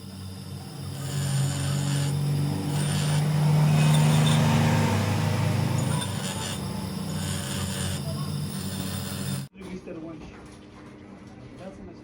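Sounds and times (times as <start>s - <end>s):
machine motor humming: 0.0s - 9.5s
metal rasping: 0.0s - 9.5s.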